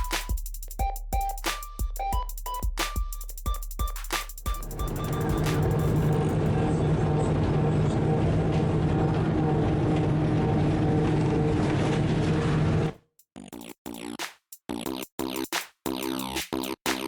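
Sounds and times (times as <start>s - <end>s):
choppy electronic music: 0.0s - 6.4s, 13.4s - 17.0s
railway car motor drone: 4.8s - 13.0s.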